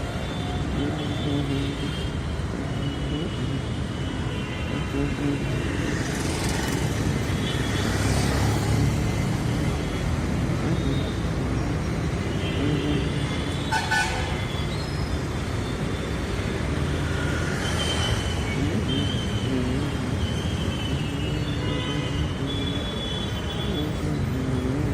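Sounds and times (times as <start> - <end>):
traffic rumble: 0.0 - 24.9
car horns tooting: 12.3 - 14.7.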